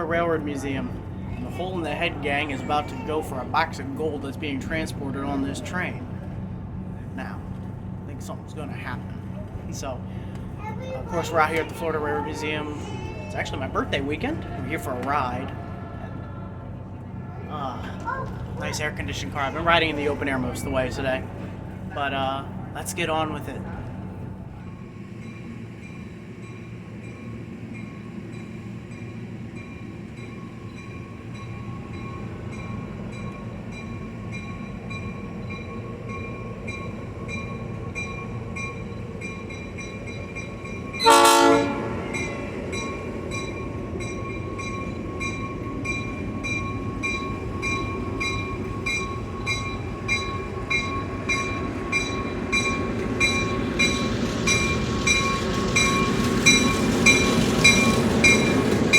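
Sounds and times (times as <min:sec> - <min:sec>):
train rumbling: 0:00.0 - 0:58.9
train horn blast: 0:41.0 - 0:42.3
wheels clicking over rail joints: 0:42.1 - 0:58.9.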